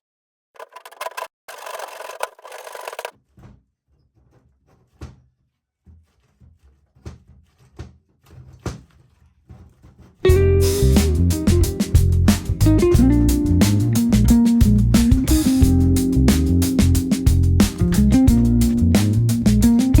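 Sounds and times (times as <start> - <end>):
rough scraping and rubbing: 0.6 - 3.1.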